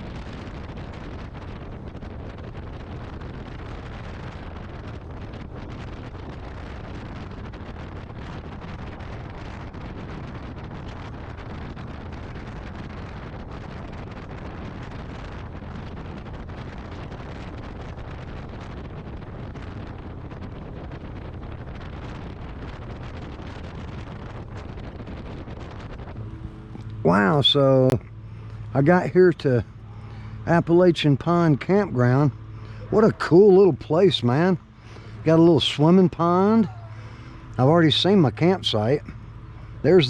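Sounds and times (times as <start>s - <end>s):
road and vehicle noise: 0.0s - 40.0s
wind buffeting microphone: 0.0s - 40.0s.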